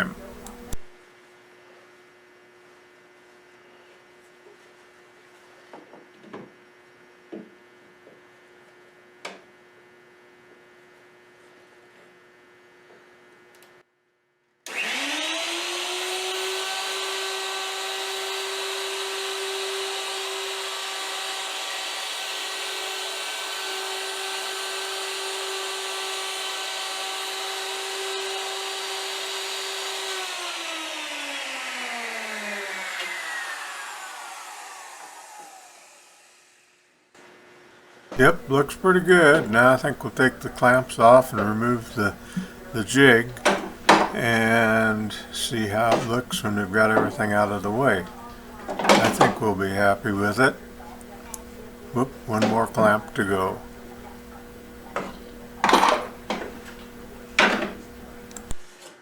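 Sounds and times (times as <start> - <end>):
electric router running: 14.7 - 36.7, 38.2 - 58.6.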